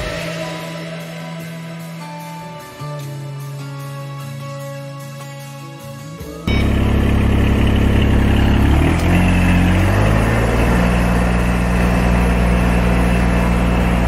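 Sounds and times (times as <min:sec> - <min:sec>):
diesel engine running: 0:06.5 - 0:14.0.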